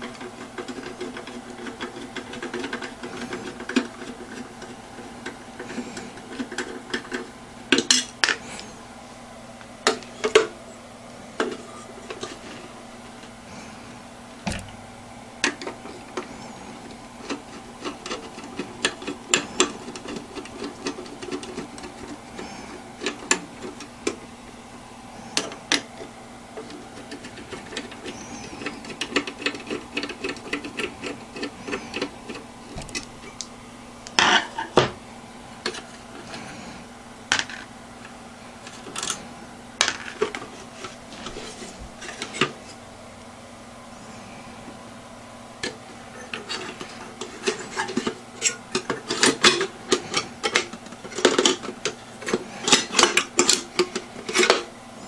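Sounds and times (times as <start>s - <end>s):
computer parts being handled: 0.0s - 8.7s, 15.4s - 24.2s, 25.3s - 33.4s, 45.6s - 54.7s
steady low hum: 0.0s - 55.0s
loud knocks: 14.4s - 14.8s.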